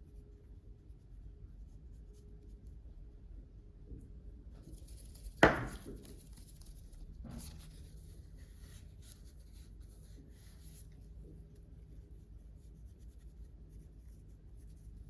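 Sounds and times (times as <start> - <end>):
soft knock: 5.4 - 6.0.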